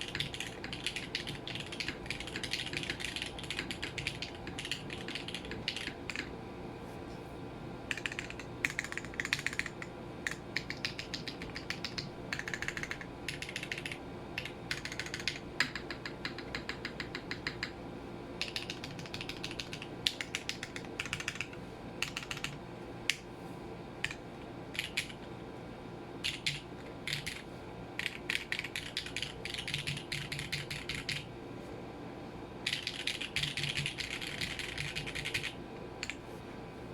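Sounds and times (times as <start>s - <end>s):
mechanical keyboard typing: 0.0s - 6.3s, 7.9s - 17.8s, 18.4s - 22.6s, 24.8s - 25.2s, 26.2s - 27.4s, 28.0s - 31.3s, 32.6s - 36.2s
air-conditioner hum: 0.0s - 36.9s.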